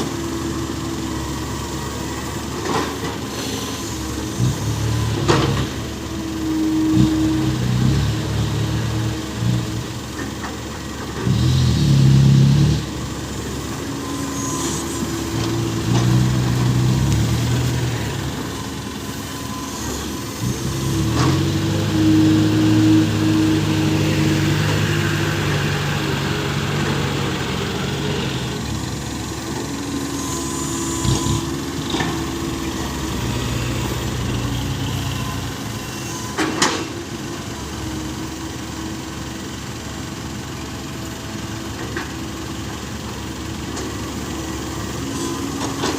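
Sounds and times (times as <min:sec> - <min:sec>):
truck engine revving: 0:03.9 - 0:10.1, 0:11.1 - 0:36.0.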